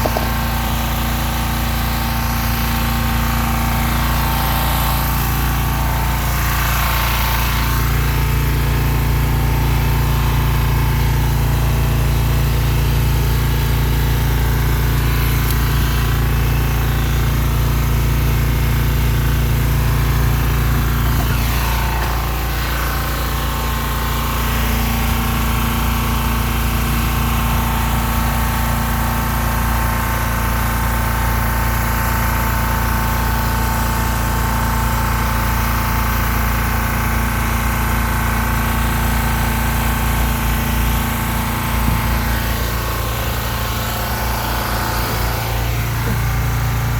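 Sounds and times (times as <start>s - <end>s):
electric forklift humming: 0.0s - 46.9s.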